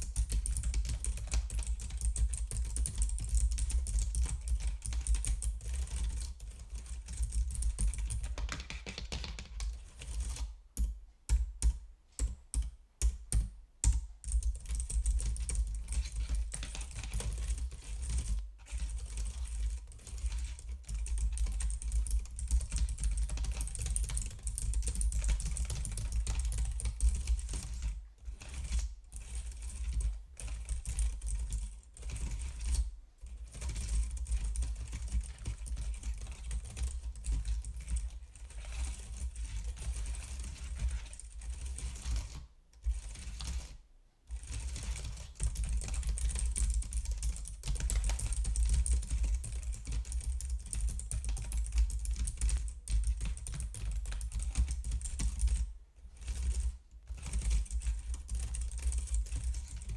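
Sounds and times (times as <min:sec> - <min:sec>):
computer keyboard typing: 0:00.0 - 0:10.4, 0:13.3 - 0:18.3, 0:20.2 - 0:27.7, 0:44.9 - 0:55.6.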